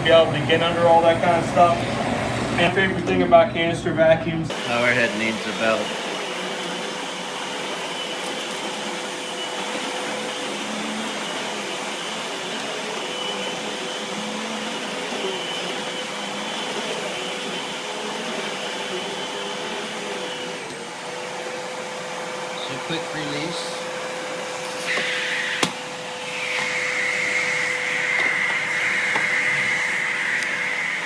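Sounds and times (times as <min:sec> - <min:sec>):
vacuum cleaner running: 0:00.0 - 0:31.0.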